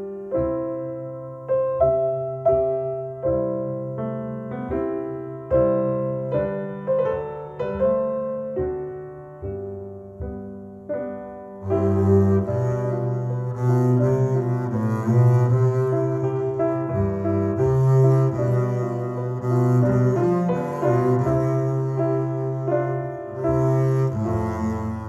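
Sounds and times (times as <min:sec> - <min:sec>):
bowed cello: 0:00.0 - 0:25.0
piano music through loudspeakers: 0:00.0 - 0:25.0.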